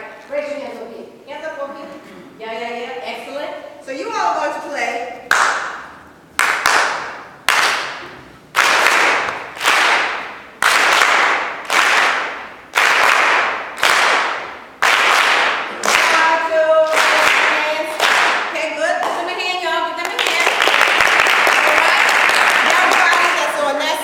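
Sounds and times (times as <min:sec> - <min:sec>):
audience clapping in rhythm: 0:05.3 - 0:19.4, 0:20.0 - 0:24.0.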